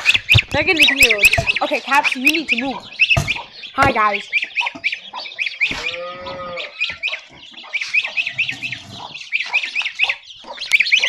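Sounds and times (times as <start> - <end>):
chicks peeping: 0.0 - 11.0
cow mooing: 5.8 - 7.0.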